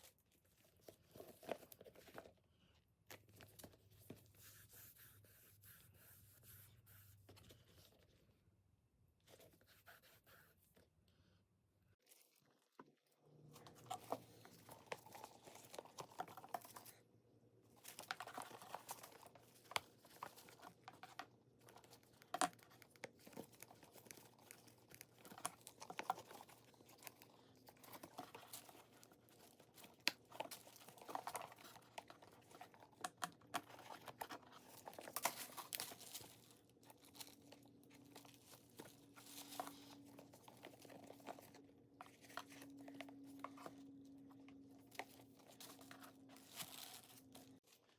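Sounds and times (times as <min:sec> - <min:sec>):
packaging crinkling and rustling: 0:13.4 - 0:17.0, 0:17.7 - 0:47.9.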